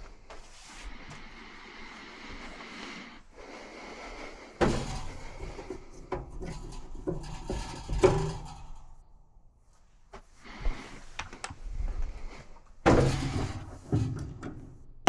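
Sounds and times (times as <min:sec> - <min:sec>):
knocks of things being handled: 0:04.6 - 0:08.8, 0:12.9 - 0:15.0.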